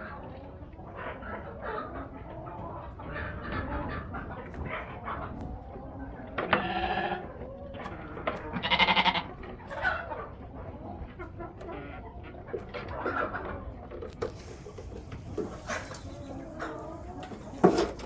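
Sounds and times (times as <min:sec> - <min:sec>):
sheep bleating: 0:06.6 - 0:07.2, 0:08.6 - 0:09.3.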